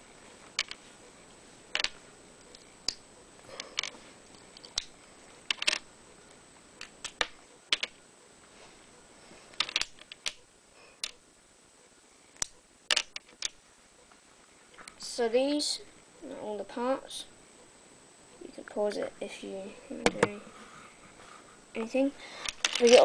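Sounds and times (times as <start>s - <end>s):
sharp irregular clicks and taps: 6.8s - 8.0s.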